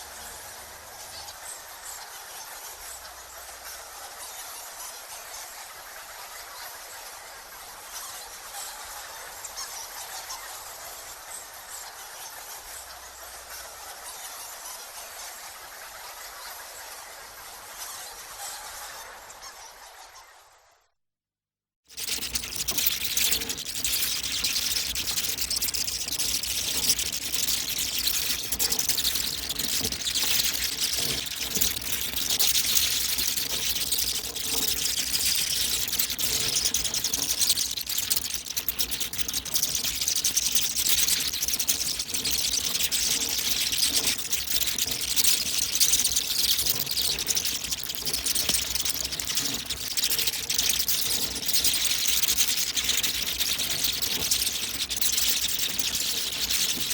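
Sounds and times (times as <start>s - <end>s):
bats chittering and squeaking: 21.9s - 56.9s.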